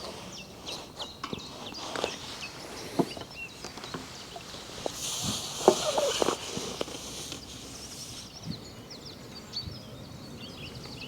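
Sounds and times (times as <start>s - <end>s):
small birds chirping: 0.0s - 11.0s
hiss: 4.8s - 8.3s.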